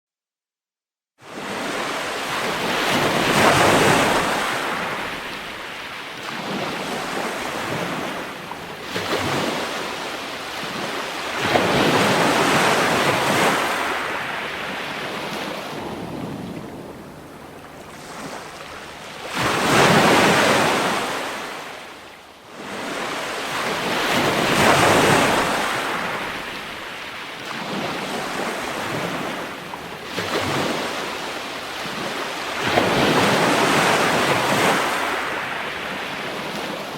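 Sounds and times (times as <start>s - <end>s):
ocean waves crashing: 1.3s - 36.9s
wind on microphone: 10.6s - 21.5s.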